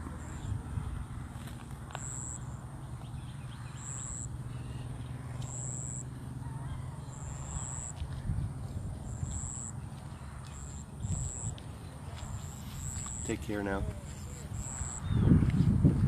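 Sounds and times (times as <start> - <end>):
wind rumble on microphone: 0.0 - 1.8, 6.8 - 13.2, 13.8 - 16.0
insect chirping: 1.9 - 2.7, 3.5 - 4.4, 5.5 - 6.1, 9.0 - 9.8, 10.6 - 11.6, 12.2 - 13.3, 14.5 - 15.2.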